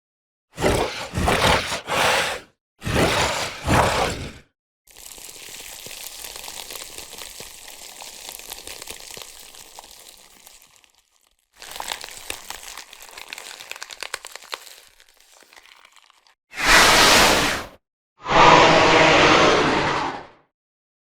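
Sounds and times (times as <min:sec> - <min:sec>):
crunching crackling cracks: 0:11.6 - 0:16.3.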